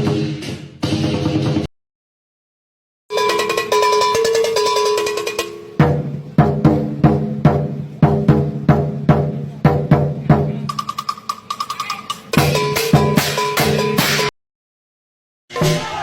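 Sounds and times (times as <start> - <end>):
drum beaten in steady rhythm: 0.0 - 1.7, 3.1 - 14.3, 15.5 - 16.0
pitched tune: 3.1 - 5.8.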